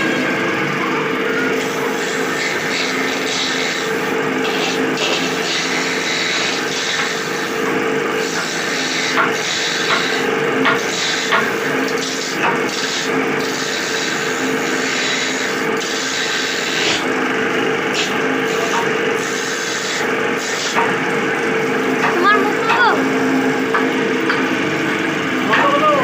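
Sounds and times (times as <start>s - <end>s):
tool rasping wood: 1.6s - 24.8s
steady hum: 16.9s - 26.0s.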